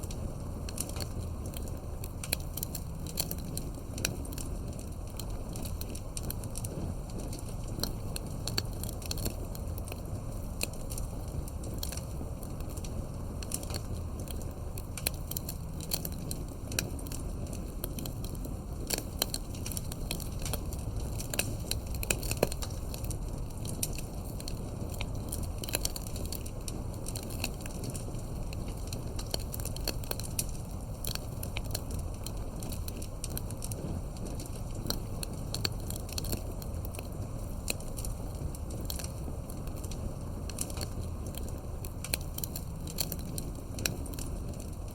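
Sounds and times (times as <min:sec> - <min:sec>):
campfire wood crackling and popping: 0:00.0 - 0:44.9
low rumble of flames: 0:00.0 - 0:44.9.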